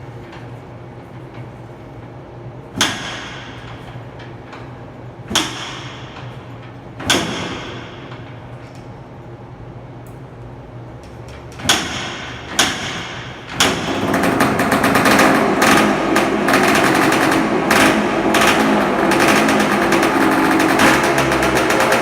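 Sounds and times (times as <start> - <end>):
two-stroke engine revving: 13.6 - 22.0.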